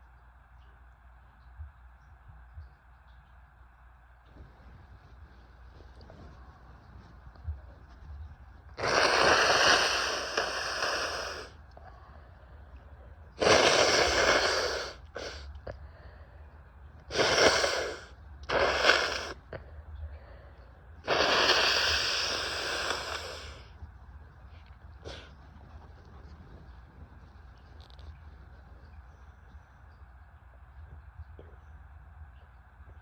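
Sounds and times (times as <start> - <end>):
woman blowing her nose: 8.8 - 11.5, 13.4 - 15.5, 17.1 - 19.4, 21.1 - 23.6.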